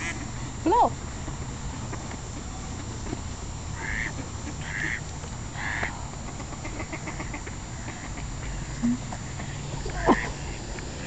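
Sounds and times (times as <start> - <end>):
faint rapid duck chatter: 1.7 - 10.7
ducks quacking: 3.7 - 11.0.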